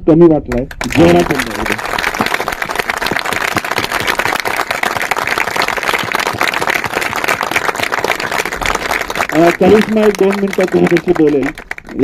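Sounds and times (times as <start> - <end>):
audience applauding: 0.6 - 12.0.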